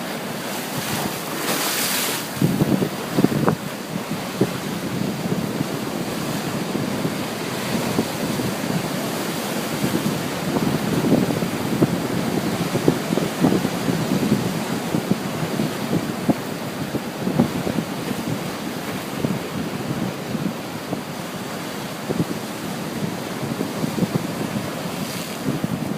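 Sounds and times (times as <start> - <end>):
ocean surf breaking: 0.0 - 25.9
wind buffeting microphone: 0.2 - 25.9.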